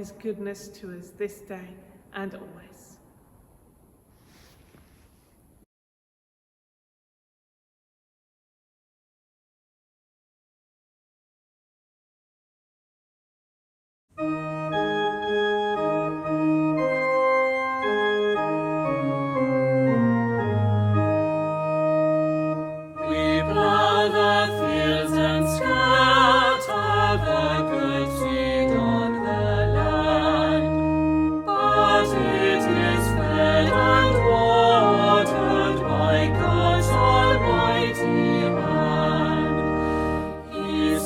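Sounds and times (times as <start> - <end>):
church organ chords: 14.2 - 41.0
choir singing: 17.8 - 20.7, 22.9 - 41.0.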